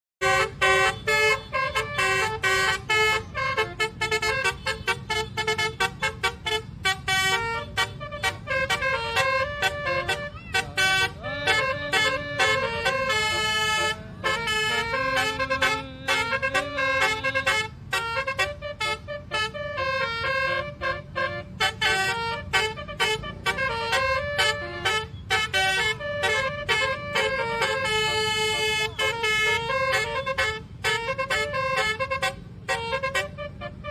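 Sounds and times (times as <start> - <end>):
multi-tone bus horn tune: 0.2 - 33.9.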